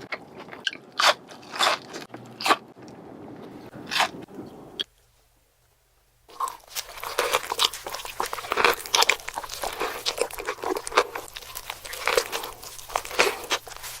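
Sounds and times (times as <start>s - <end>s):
person chewing a burger: 0.0s - 2.7s, 6.3s - 14.0s.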